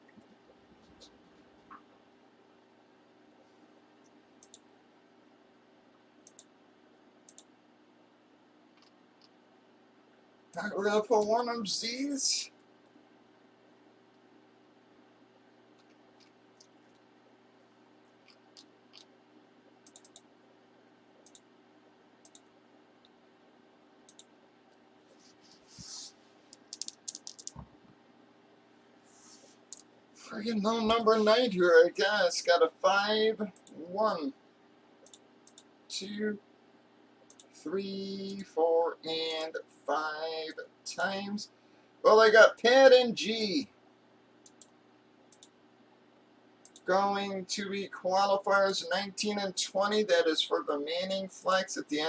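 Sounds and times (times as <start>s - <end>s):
faint room hum: 0.0s - 52.0s
faint clicks: 4.0s - 4.7s, 6.2s - 6.5s, 19.8s - 20.3s, 22.2s - 23.2s, 24.1s - 24.8s, 35.0s - 35.7s, 37.2s - 37.5s, 44.4s - 45.6s, 46.6s - 46.9s
handling noise of small objects: 26.6s - 27.6s.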